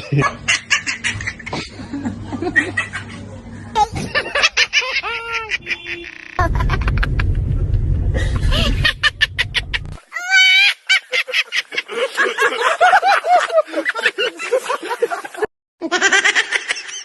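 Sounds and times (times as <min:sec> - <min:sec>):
high-pitched cackling laugh: 0:00.0 - 0:07.3, 0:08.2 - 0:17.0
low background rumble: 0:00.5 - 0:10.0.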